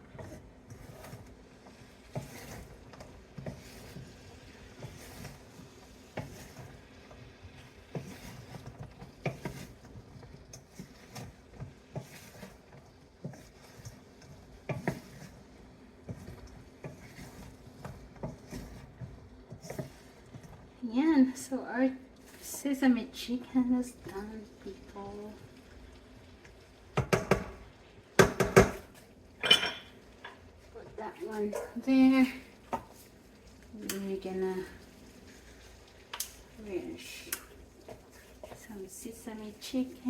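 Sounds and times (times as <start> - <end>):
light sizzle: 0.0 - 40.0
utensil knocking and scraping pan: 2.0 - 4.1, 4.7 - 15.4, 27.0 - 27.6, 28.2 - 30.4.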